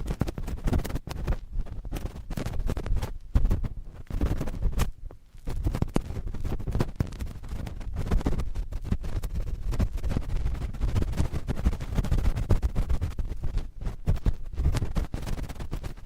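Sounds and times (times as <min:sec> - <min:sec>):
cotton swabs scratching a microphone: 0:00.0 - 0:16.0.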